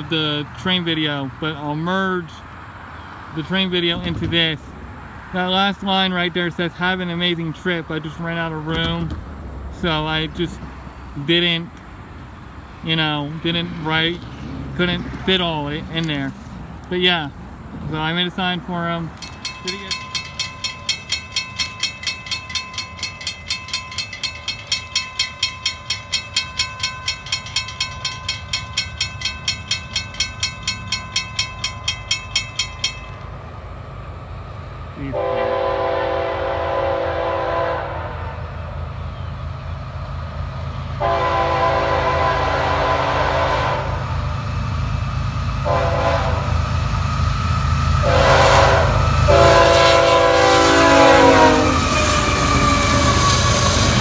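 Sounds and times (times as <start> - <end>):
train engine and rail rumble: 0.0 - 54.0
crossing warning bell ringing: 18.0 - 33.8, 40.8 - 54.0
locomotive air horn: 35.0 - 38.6, 41.0 - 44.2, 45.6 - 46.6, 48.0 - 53.8.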